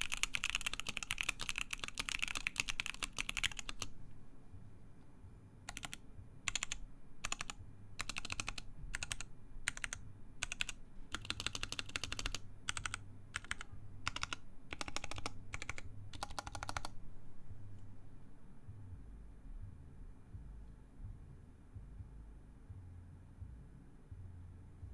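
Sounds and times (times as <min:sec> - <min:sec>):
typing on mechanical keyboard: 0:00.0 - 0:03.9, 0:05.7 - 0:17.0.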